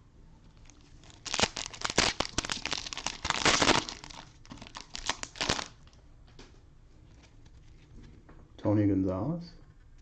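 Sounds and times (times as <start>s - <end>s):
cellophane wrapper crinkling: 0.6s - 6.0s.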